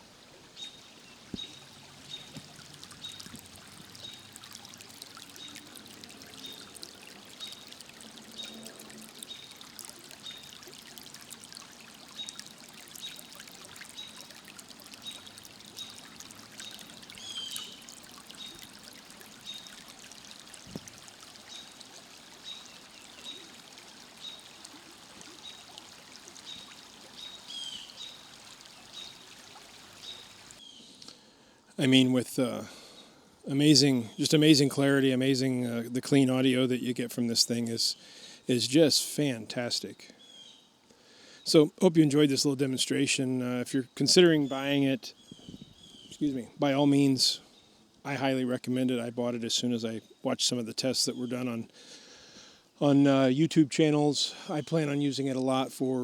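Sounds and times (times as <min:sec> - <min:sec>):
water trickling: 0:00.0 - 0:51.6, 0:52.5 - 0:56.0
bird calls: 0:12.0 - 0:19.9, 0:26.3 - 0:31.2.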